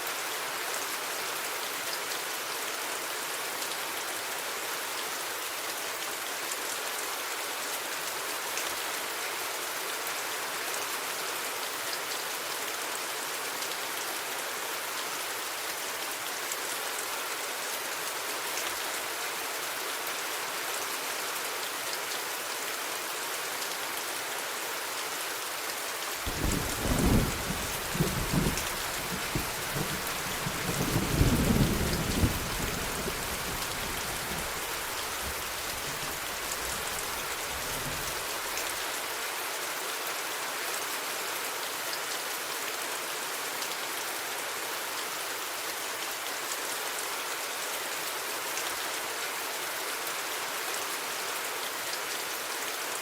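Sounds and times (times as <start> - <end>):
rain hissing and pattering: 0.0 - 53.0
thunder rumbling: 26.3 - 36.0.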